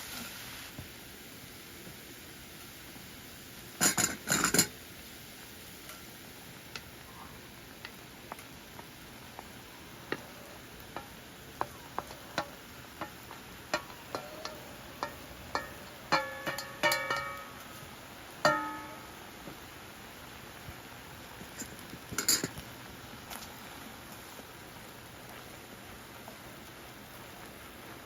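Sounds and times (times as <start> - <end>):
cookware clattering: 3.8 - 4.7, 12.1 - 17.6, 18.5 - 19.0, 21.6 - 22.6
light clinks and taps: 10.9 - 17.5.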